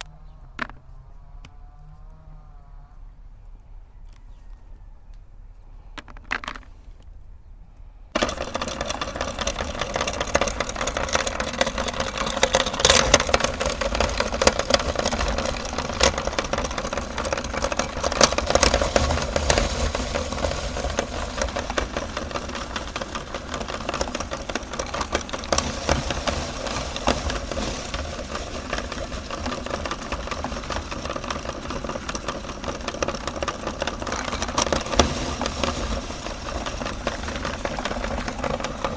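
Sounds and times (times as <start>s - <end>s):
cookies cracking in grinder: 8.2s - 38.9s
electric meat grinder motor: 8.2s - 38.9s.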